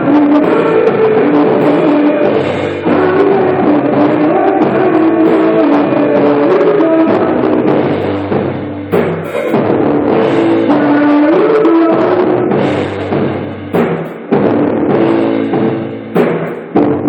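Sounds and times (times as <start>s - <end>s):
rock band playing: 0.0s - 17.0s
sharp crash hit: 9.0s - 9.9s.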